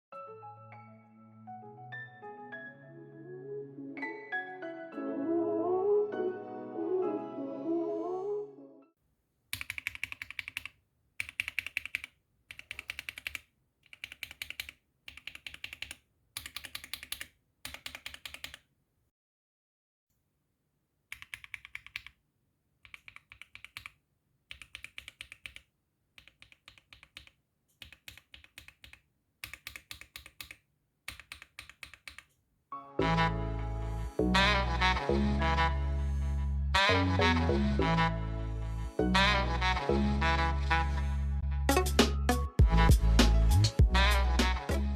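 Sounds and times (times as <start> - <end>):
mechanical keyboard typing: 9.5 - 18.7, 21.1 - 22.2, 22.8 - 32.3.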